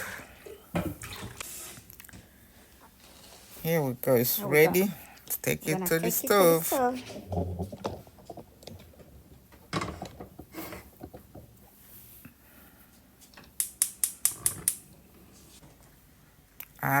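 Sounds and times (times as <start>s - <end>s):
knocks and clatter at stove: 7.0s - 11.6s
sharp clicks: 13.6s - 14.8s.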